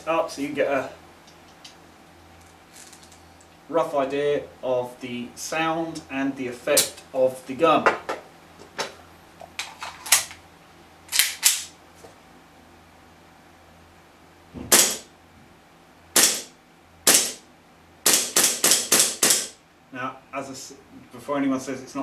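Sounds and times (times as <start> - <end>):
airsoft pistol shots: 14.7 - 15.1, 16.2 - 16.5, 17.1 - 17.4, 18.1 - 19.6.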